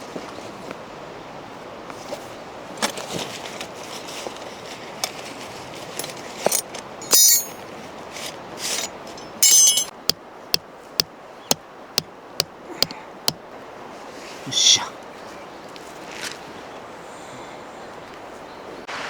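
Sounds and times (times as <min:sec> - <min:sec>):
metal objects clinking: 0:06.5 - 0:07.6, 0:08.6 - 0:10.1.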